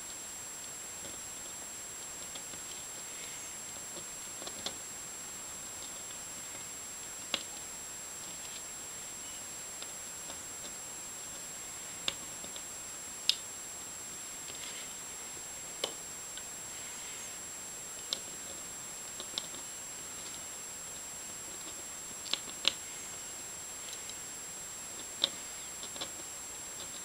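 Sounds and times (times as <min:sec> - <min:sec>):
steady hiss: 0:00.0 - 0:27.0
thin high whine: 0:06.0 - 0:10.2, 0:12.7 - 0:17.8
pen nib ticking on paper: 0:24.9 - 0:27.0.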